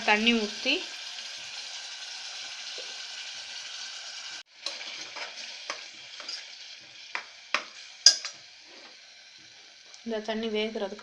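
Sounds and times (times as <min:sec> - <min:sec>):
meat sizzling in oil: 0:00.0 - 0:11.0.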